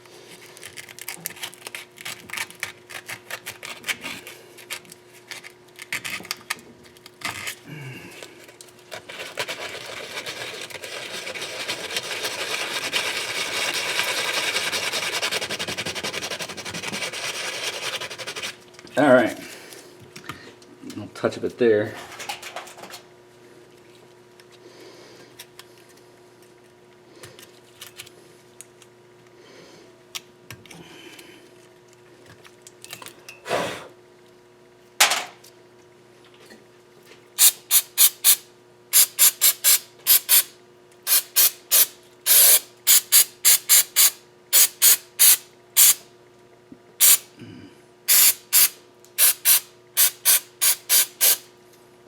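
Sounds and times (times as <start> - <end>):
faint steady hum: 0.0 - 52.0.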